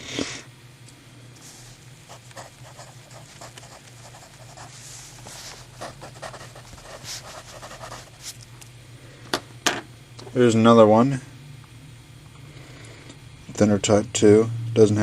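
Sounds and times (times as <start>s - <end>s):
steady low hum: 0.0s - 15.0s
pencil clicks and rustles: 2.2s - 8.5s.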